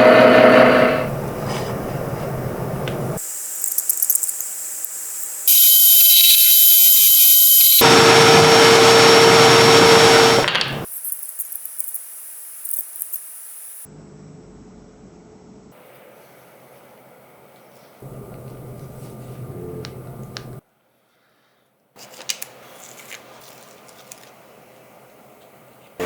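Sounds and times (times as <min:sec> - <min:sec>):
machine humming: 0:00.0 - 0:03.2, 0:05.5 - 0:10.9, 0:18.0 - 0:20.6
workshop power tools: 0:00.0 - 0:10.9.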